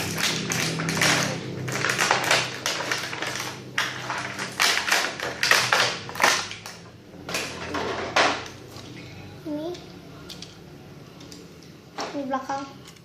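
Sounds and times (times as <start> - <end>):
packaging rustling: 0.0 - 6.8.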